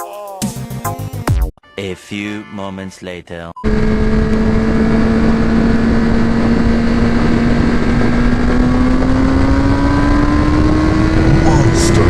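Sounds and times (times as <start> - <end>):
motorcycle engine running at speed: 3.6 - 12.0
wind noise: 3.7 - 12.0.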